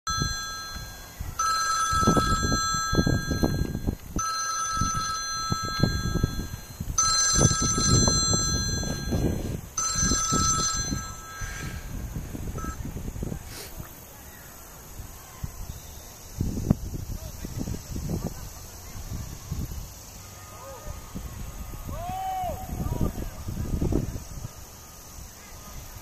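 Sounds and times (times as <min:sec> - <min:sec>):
phone ringtone: 0:00.1 - 0:12.8.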